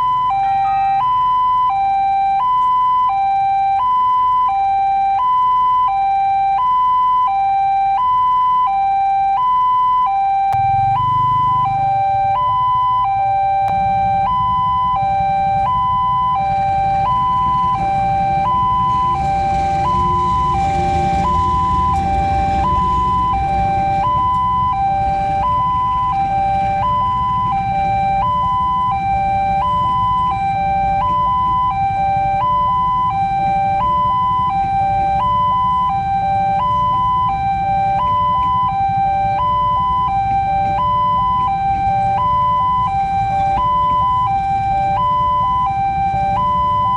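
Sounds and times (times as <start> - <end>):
two-tone crossing alarm: 0.0 - 46.9
low rumble: 13.7 - 26.0.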